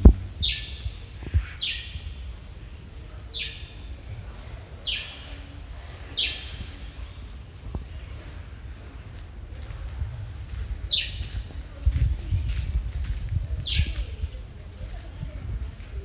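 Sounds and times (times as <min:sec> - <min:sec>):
low rumble: 0:00.0 - 0:03.2, 0:07.7 - 0:14.7
bird high falling calls: 0:00.4 - 0:02.0.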